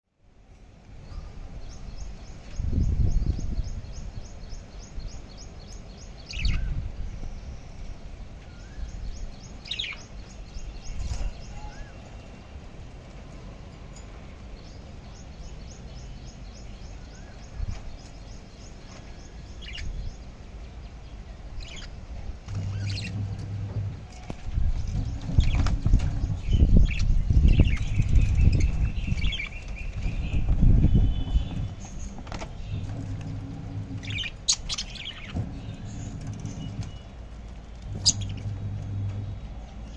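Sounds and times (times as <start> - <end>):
budgerigars chirping: 6.2 - 6.7, 9.5 - 10.1, 21.6 - 23.6, 24.9 - 30.5, 32.6 - 37.0, 37.9 - 38.8
steady low rumble: 19.6 - 39.9.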